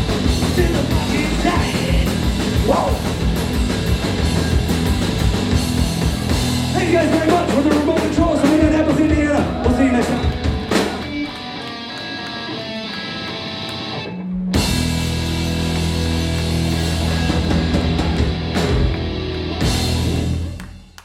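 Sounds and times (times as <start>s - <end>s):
punk rock band playing: 0.0s - 21.0s.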